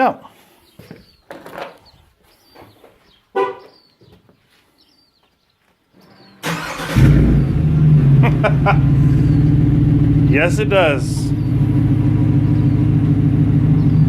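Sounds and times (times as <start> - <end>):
car engine starting and idling: 6.4 - 14.0.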